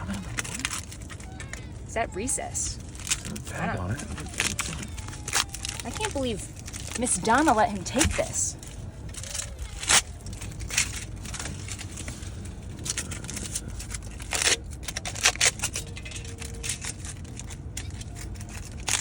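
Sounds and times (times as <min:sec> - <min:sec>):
handling clicks and scrapes: 0:00.0 - 0:19.0
low hum: 0:00.0 - 0:19.0.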